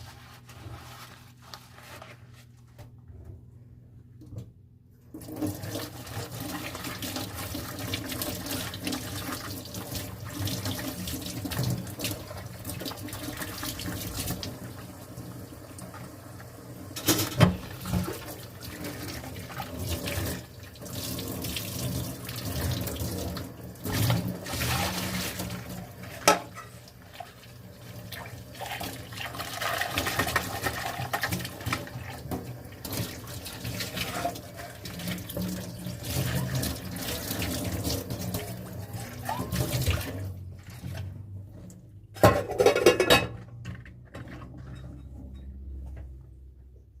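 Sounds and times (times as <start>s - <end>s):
tap water running into sink: 5.2s - 14.9s, 17.3s - 41.1s.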